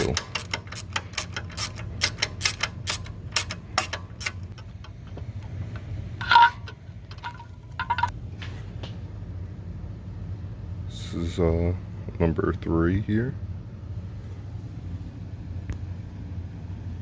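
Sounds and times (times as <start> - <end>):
ratchet wrench clicking: 0.0 - 8.1
light metal clinks: 4.6 - 8.1
metallic clink with ring: 6.2 - 8.1.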